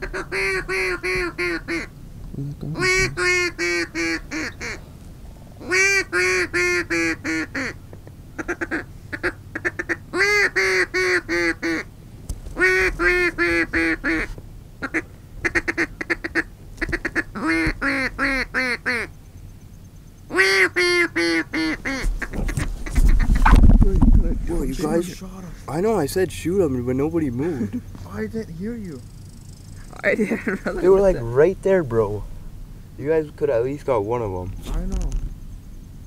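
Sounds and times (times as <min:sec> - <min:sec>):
duck call quacking: 0:00.0 - 0:01.9, 0:02.8 - 0:04.8, 0:05.6 - 0:07.8, 0:08.4 - 0:11.9, 0:12.6 - 0:19.1, 0:20.3 - 0:23.6.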